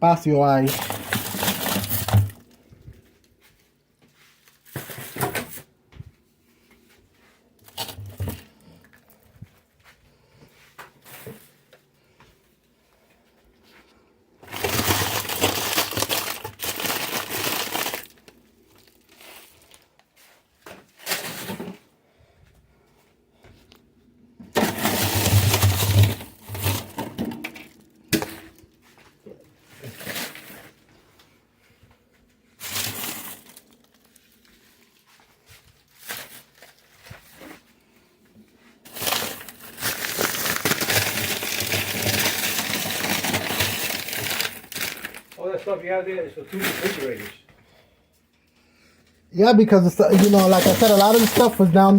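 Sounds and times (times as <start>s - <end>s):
plastic bags rustling: 0.4s - 3.2s, 4.3s - 5.7s, 7.4s - 9.4s, 14.4s - 21.8s, 24.5s - 31.1s, 32.5s - 37.9s, 38.6s - 47.5s, 49.7s - 51.9s.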